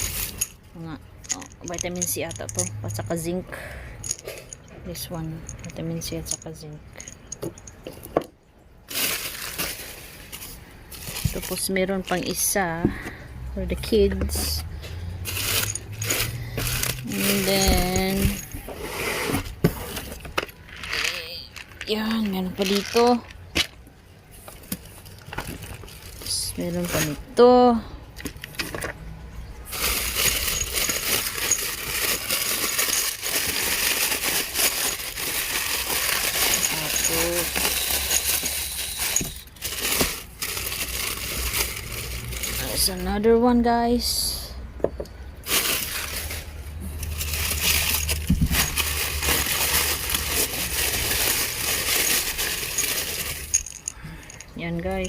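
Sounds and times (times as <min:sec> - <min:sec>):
paper packing material rustling: 0:00.0 - 0:00.6, 0:08.9 - 0:12.5, 0:15.2 - 0:23.2, 0:29.7 - 0:43.0, 0:45.4 - 0:53.9.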